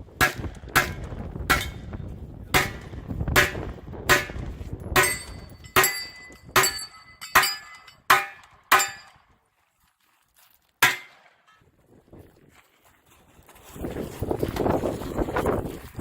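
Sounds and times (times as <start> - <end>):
pistol shots with ringing tail: 2.6 - 9.2.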